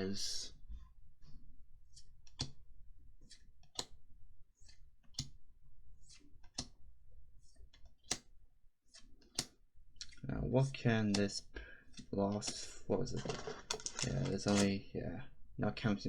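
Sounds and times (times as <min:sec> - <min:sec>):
trading cards clicking and snapping: 0:11.9 - 0:14.8.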